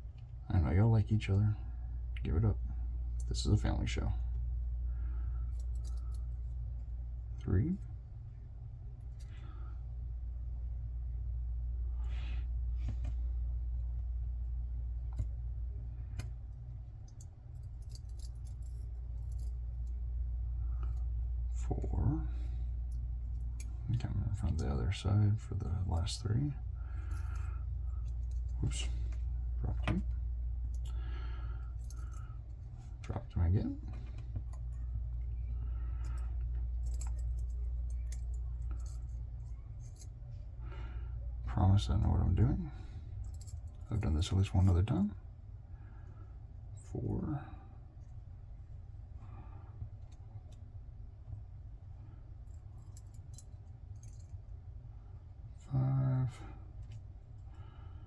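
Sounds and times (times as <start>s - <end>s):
steady low hum: 0.0s - 58.0s
metallic clicks of lock pins: 5.5s - 6.3s, 16.1s - 19.9s, 36.0s - 40.1s, 52.5s - 54.5s.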